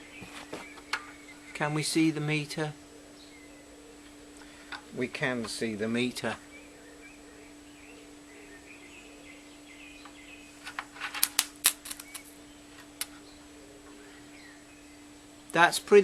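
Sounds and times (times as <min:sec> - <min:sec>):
faint birdsong: 0:00.0 - 0:16.0
steady low hum: 0:00.0 - 0:16.0.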